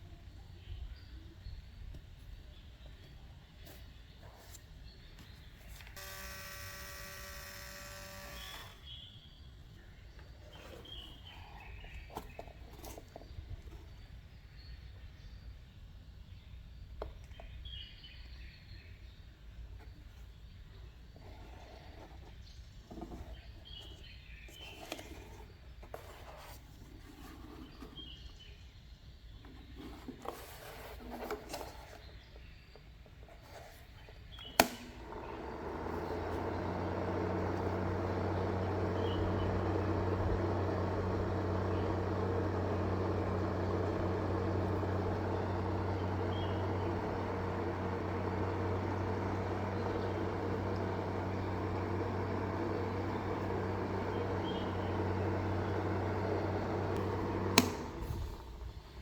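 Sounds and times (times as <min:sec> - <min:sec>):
small fan motor humming: 0:05.2 - 0:14.0, 0:33.4 - 0:59.0.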